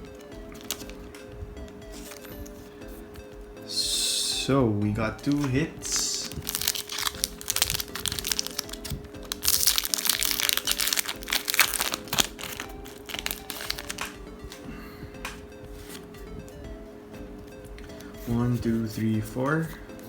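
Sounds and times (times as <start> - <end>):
background music: 0.0 - 20.0
foil wrapper crinkling: 0.5 - 1.0, 5.2 - 14.2.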